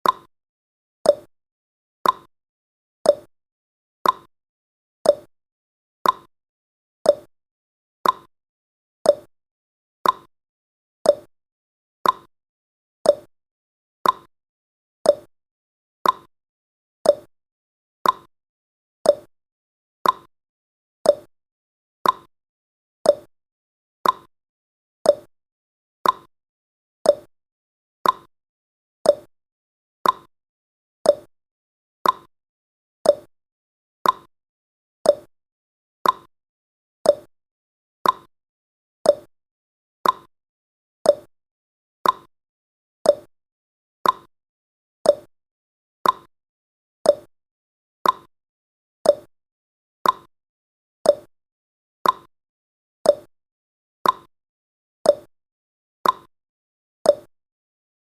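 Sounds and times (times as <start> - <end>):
clock tick-tock: 0.0 - 0.3, 1.1 - 1.3, 2.0 - 2.3, 3.1 - 3.3, 4.0 - 4.3, 5.1 - 5.3, 6.0 - 6.3, 7.1 - 7.3, 8.0 - 8.3, 9.1 - 9.3, 10.0 - 10.3, 11.1 - 11.3, 12.0 - 12.3, 13.1 - 13.3, 14.0 - 14.3, 15.1 - 15.3, 16.0 - 16.3, 17.0 - 17.3, 18.0 - 18.3, 19.0 - 19.3, 20.0 - 20.3, 21.0 - 21.3, 22.0 - 22.3, 23.0 - 23.3, 24.0 - 24.3, 25.0 - 25.3, 26.0 - 26.3, 27.0 - 27.3, 28.0 - 28.3, 29.0 - 29.3, 30.0 - 30.3, 31.0 - 31.3, 32.0 - 32.3, 33.0 - 33.3, 34.0 - 34.3, 35.0 - 35.3, 36.0 - 36.3, 37.0 - 37.3, 38.0 - 38.3, 39.0 - 39.3, 40.0 - 40.3, 41.0 - 41.3, 42.0 - 42.3, 43.0 - 43.3, 44.0 - 44.3, 45.0 - 45.3, 46.0 - 46.3, 47.0 - 47.3, 48.0 - 48.3, 49.0 - 49.3, 50.0 - 50.3, 51.1 - 51.3, 52.0 - 52.3, 53.1 - 53.3, 54.0 - 54.3, 55.1 - 55.3, 56.0 - 56.3, 57.1 - 57.3.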